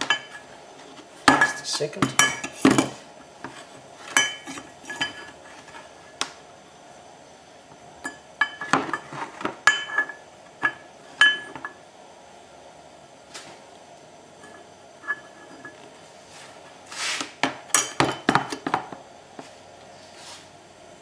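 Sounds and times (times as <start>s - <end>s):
metal tools clinking and knocking: 4.1s - 5.4s, 9.7s - 11.8s.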